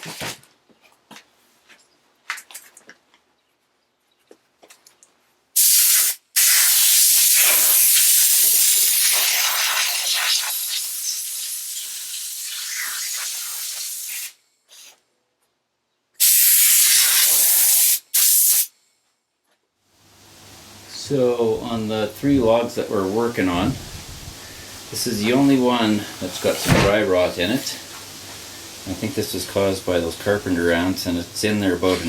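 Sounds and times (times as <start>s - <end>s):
pressurised jet hissing: 5.6s - 14.9s, 16.2s - 18.7s, 20.8s - 32.0s.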